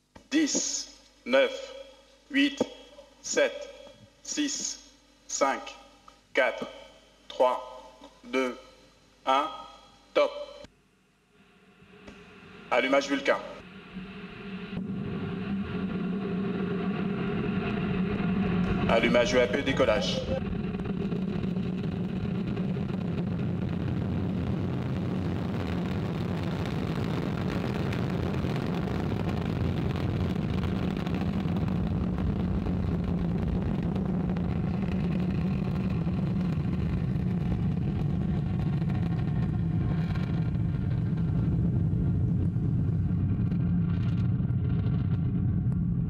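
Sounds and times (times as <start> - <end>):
deep rocket engine rumble: 11.7 - 46.0.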